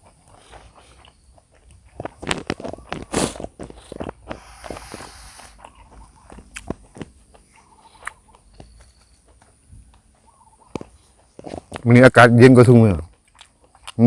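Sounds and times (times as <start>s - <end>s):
person chewing food: 0.0s - 11.8s, 13.1s - 14.0s
brief hiss: 4.4s - 5.6s.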